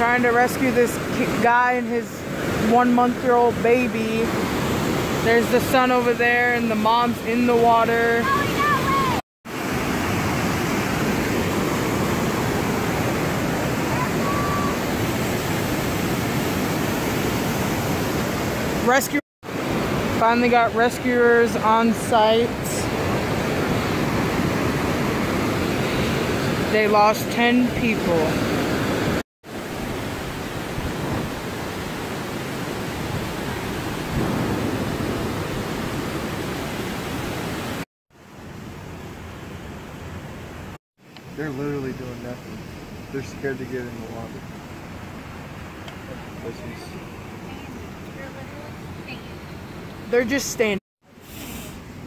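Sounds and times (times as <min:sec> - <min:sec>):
water rushing down a creek: 0:00.0 - 0:52.0.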